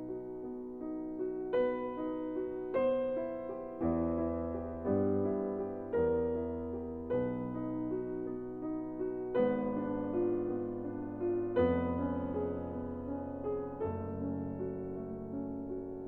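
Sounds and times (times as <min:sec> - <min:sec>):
soft piano chords: 0:00.0 - 0:16.0.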